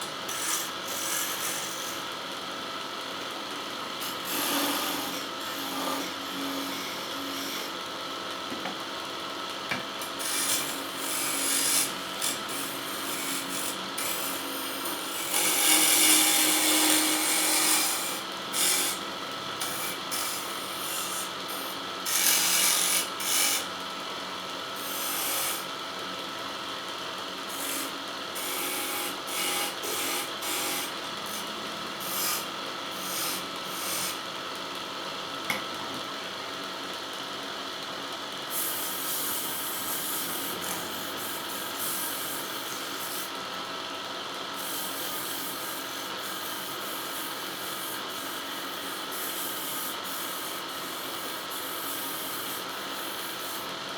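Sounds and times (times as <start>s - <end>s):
lathe motor hum: 9.7s - 19.0s, 28.5s - 34.7s.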